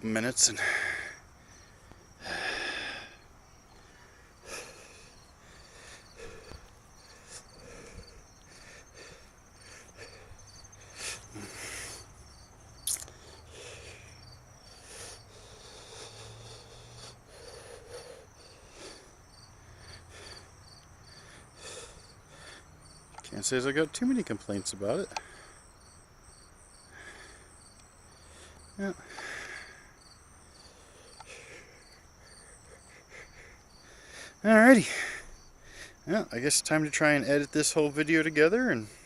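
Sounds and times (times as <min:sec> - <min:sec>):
breathy noises: 0:00.0 - 0:26.0, 0:26.7 - 0:36.5
insects chirping: 0:00.0 - 0:39.0.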